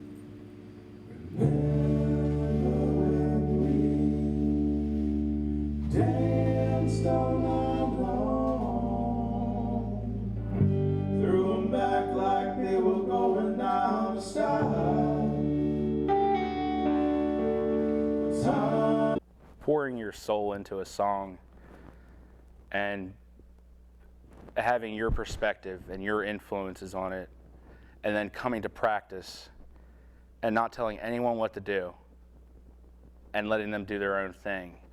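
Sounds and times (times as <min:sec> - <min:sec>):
guitar chords: 0:00.0 - 0:19.2
person singing: 0:01.1 - 0:19.2.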